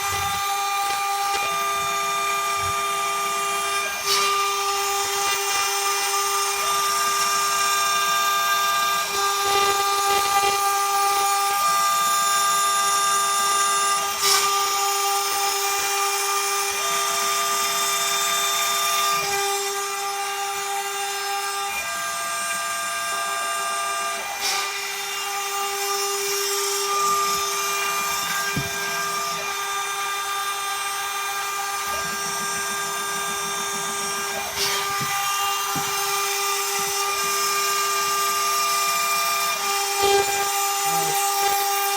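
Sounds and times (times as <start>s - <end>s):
router spindle whining: 0.0s - 41.9s
hissing cutting noise: 21.4s - 41.9s.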